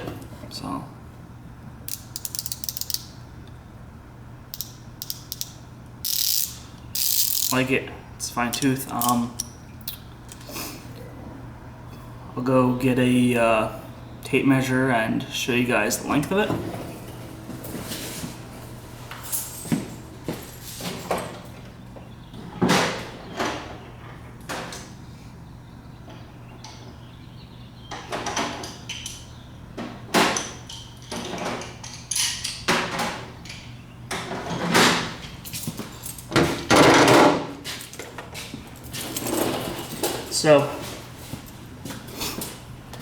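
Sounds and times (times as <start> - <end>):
tools knocking and clattering: 29.8 - 38.2.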